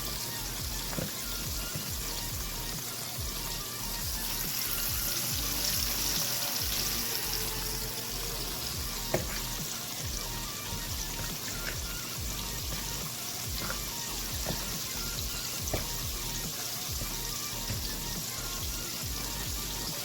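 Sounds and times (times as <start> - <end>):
background music with low beat: 0.0 - 20.0
chicken frying in hot oil: 0.0 - 20.0.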